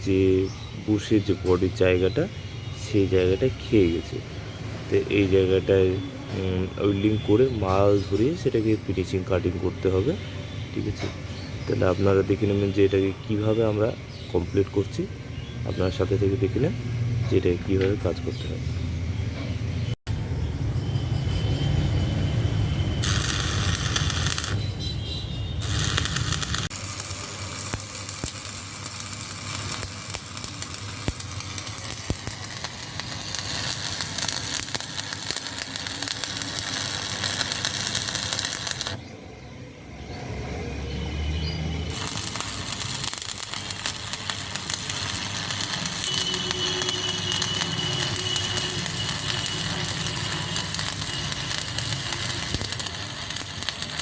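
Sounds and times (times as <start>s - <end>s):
arc welding crackling and sizzling: 21.3s - 39.2s, 41.7s - 54.0s.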